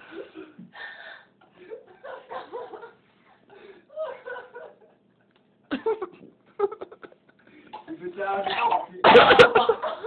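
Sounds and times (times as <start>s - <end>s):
people chuckling and snickering: 5.7s - 7.8s.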